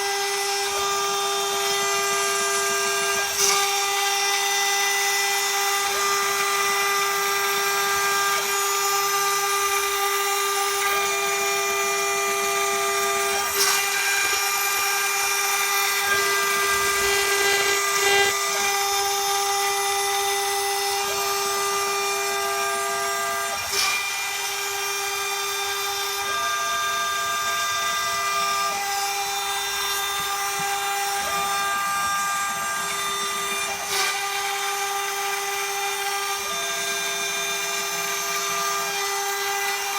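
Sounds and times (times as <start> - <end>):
router spindle high-pitched whine: 0.0 - 39.9
machine movement tone: 13.4 - 20.2.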